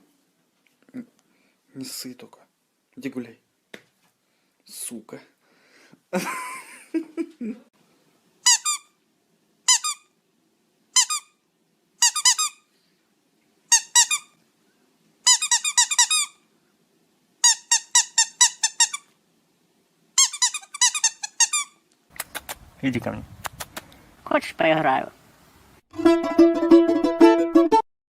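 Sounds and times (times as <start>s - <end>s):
squeaky dog toy squeaking: 8.4s - 8.9s, 9.7s - 10.1s, 11.0s - 11.4s, 12.0s - 12.6s, 13.7s - 14.3s, 15.2s - 16.4s, 17.4s - 19.1s, 20.2s - 21.8s.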